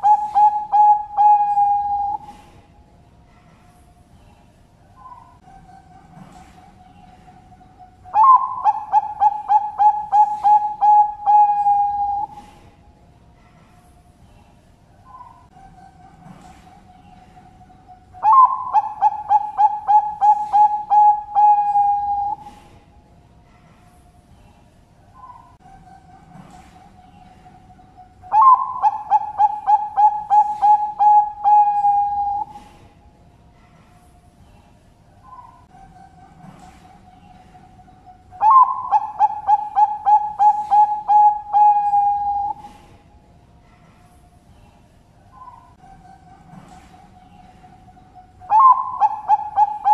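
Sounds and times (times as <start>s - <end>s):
dove cooing: 0.0s - 2.6s, 5.0s - 12.6s, 15.1s - 22.7s, 25.2s - 32.8s, 35.2s - 42.9s, 45.4s - 49.9s
faint doves cooing: 0.0s - 23.0s, 23.7s - 33.0s, 33.6s - 49.9s.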